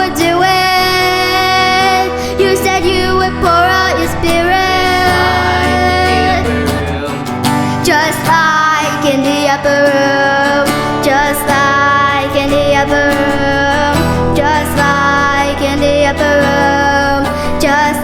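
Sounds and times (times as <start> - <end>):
steady bass: 0.0 - 10.0
guitar: 0.0 - 18.0
woman singing: 0.0 - 18.0.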